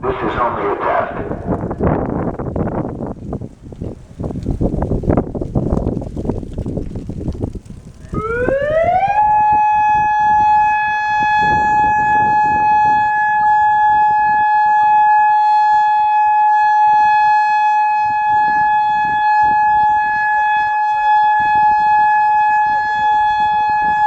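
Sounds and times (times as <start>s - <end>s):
warning siren: 8.0s - 24.0s.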